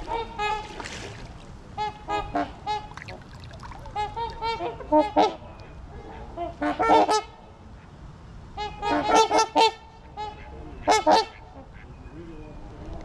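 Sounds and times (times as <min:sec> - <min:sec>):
waterfowl honking: 0:00.0 - 0:01.2, 0:01.8 - 0:05.4, 0:08.6 - 0:11.9.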